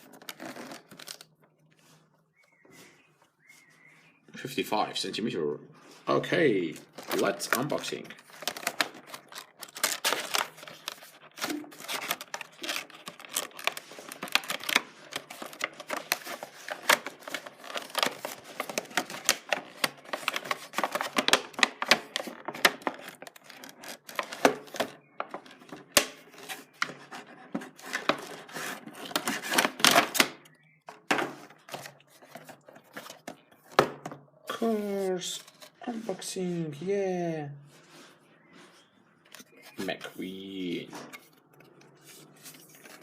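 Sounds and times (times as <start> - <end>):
packaging clicks and rustles: 0.0 - 2.6, 6.7 - 27.0, 27.6 - 30.7, 31.3 - 34.2, 41.1 - 43.0.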